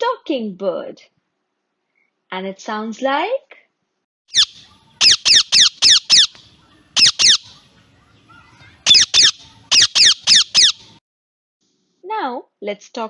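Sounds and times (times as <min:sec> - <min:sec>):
parrot squawking: 0:04.3 - 0:11.0.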